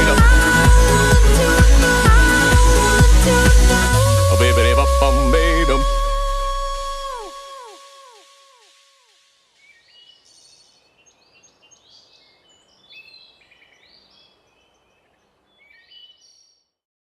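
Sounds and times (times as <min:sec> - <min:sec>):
echoing synth notes: 0:00.0 - 0:07.2
songbirds chirping: 0:09.5 - 0:16.7.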